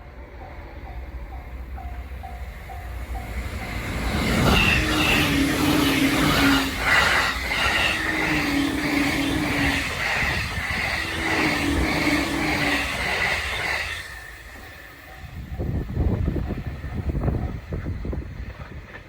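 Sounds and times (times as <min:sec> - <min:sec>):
train passing: 0:00.0 - 0:19.0
crossing warning bell ringing: 0:00.3 - 0:17.9.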